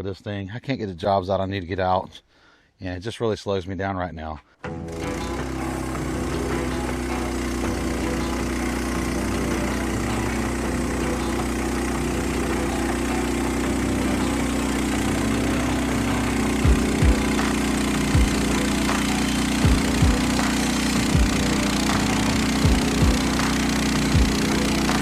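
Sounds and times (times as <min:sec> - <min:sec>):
sawmill engine running: 0:04.8 - 0:25.0
short low thumps: 0:19.6 - 0:20.4, 0:22.6 - 0:23.2.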